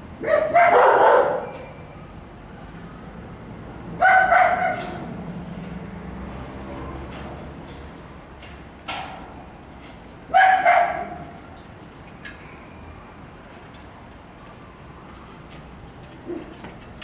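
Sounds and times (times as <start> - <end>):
dog barking: 0.2 - 1.7, 4.0 - 5.0, 10.3 - 11.4.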